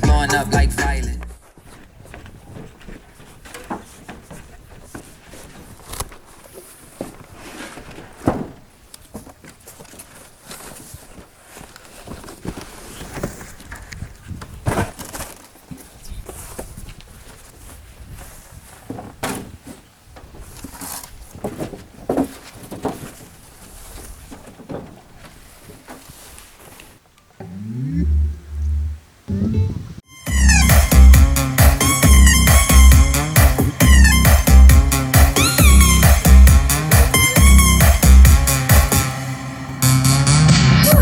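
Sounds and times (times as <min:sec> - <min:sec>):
shuffling: 0:00.0 - 0:39.9
irregular knocks and thumps: 0:27.4 - 0:30.0.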